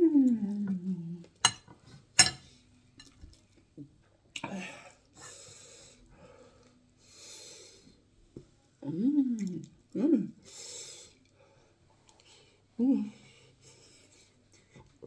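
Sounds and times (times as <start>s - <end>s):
mouth or cutlery clicks: 2.2s - 2.4s.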